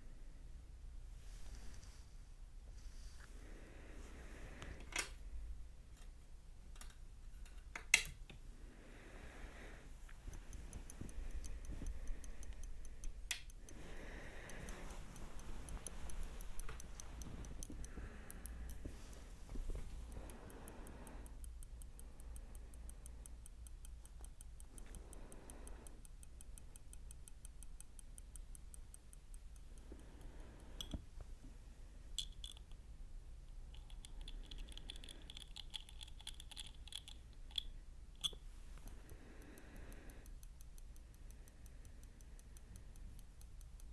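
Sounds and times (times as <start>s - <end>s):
soft scratching and rubbing: 1.1s - 4.4s, 13.7s - 20.2s
fine fast clicking: 9.2s - 43.9s.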